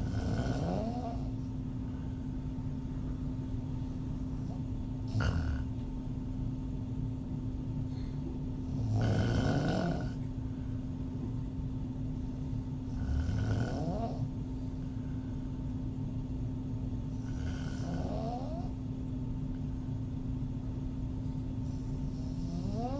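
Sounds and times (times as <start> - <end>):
woman snoring: 0.0 - 1.3, 5.1 - 5.7, 8.7 - 10.3, 12.9 - 14.3, 17.2 - 18.8, 22.1 - 22.9
low hum: 1.0 - 9.0.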